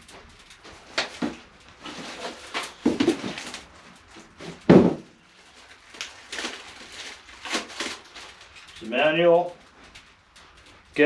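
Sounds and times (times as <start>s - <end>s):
cardboard and paper rustling: 0.0s - 10.8s
loud thump: 4.7s - 5.1s.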